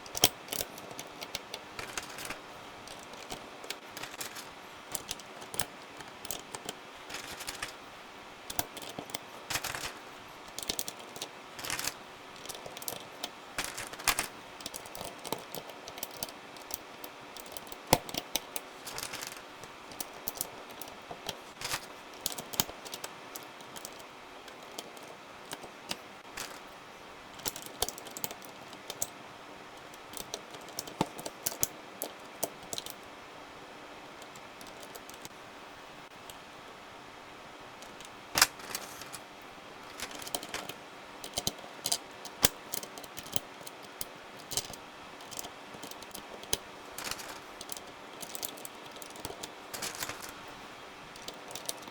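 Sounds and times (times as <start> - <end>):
mechanical keyboard clacks: 0.0 - 26.8, 37.8 - 39.2, 39.8 - 51.9.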